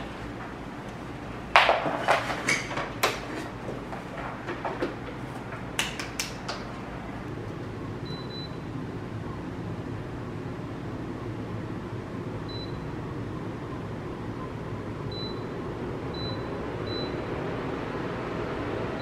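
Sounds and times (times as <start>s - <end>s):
steady low hum: 0.0s - 19.0s
sharp knocks and clatters: 1.5s - 6.7s.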